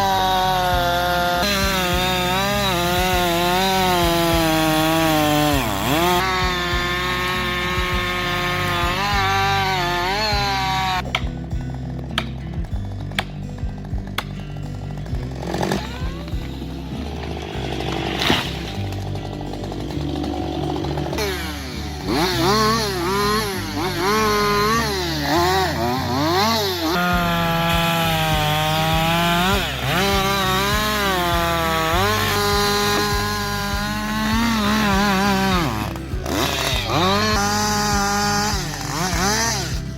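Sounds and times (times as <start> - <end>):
background music: 0.0 - 39.9
chainsaw engine revving: 0.0 - 39.9.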